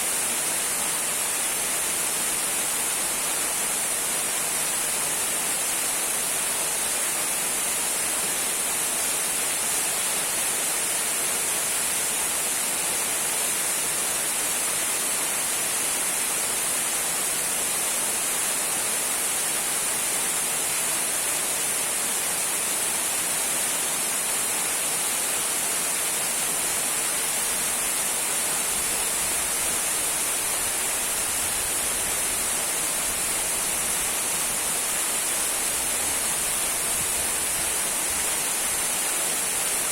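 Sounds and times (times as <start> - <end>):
trickling waterfall: 0.0 - 39.9.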